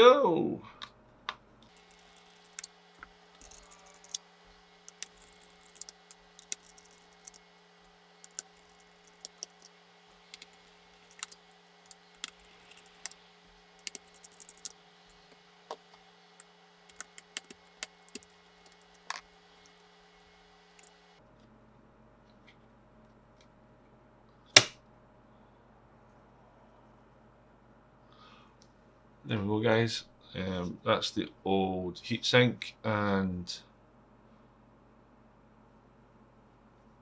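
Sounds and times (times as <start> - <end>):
screwdriver clicking and tapping: 3.4 - 4.2, 4.9 - 7.5.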